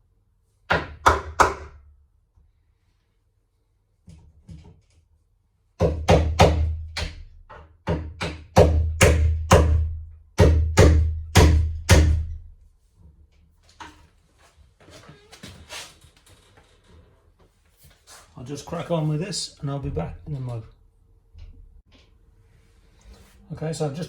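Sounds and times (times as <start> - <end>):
hammer striking chisel: 0.7 - 1.8, 5.8 - 12.4.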